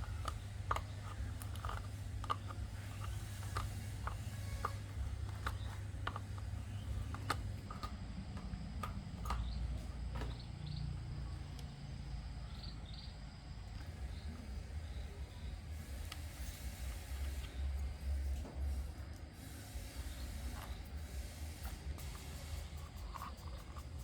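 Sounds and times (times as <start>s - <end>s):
hand tools clicking and tapping: 0.0s - 10.6s, 20.2s - 24.0s
low steady rumble: 0.0s - 24.0s.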